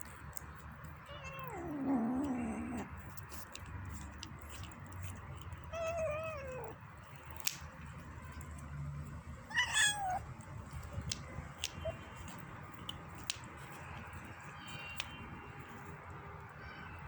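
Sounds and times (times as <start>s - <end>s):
kitten meowing: 1.0s - 2.9s, 5.6s - 6.8s, 9.5s - 10.3s.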